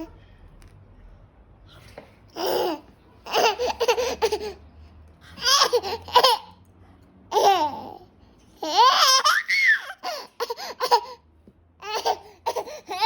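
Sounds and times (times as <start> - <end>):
baby laughing: 2.3 - 4.7, 5.4 - 6.6, 7.3 - 11.2, 11.8 - 13.0.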